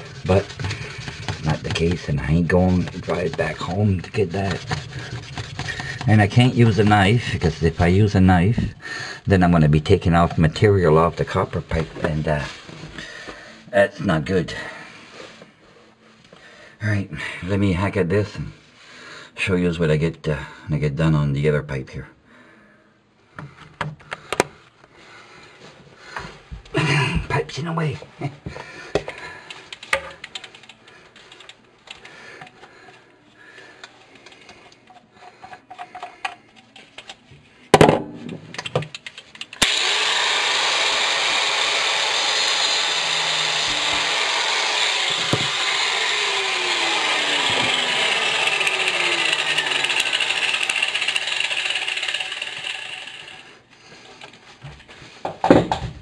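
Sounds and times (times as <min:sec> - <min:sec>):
power tool cutting pipe: 0:00.0 - 0:07.7, 0:39.6 - 0:53.6.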